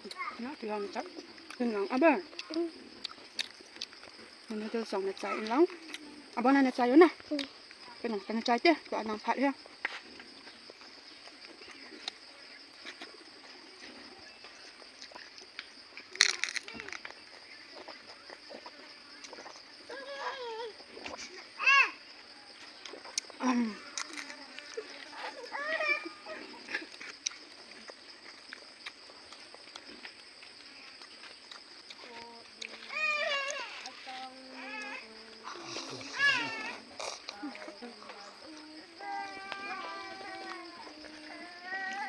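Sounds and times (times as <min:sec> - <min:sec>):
chewing and mouth noises: 0:02.3 - 0:04.3, 0:09.8 - 0:21.4, 0:22.6 - 0:25.5, 0:26.4 - 0:34.0, 0:36.9 - 0:38.6.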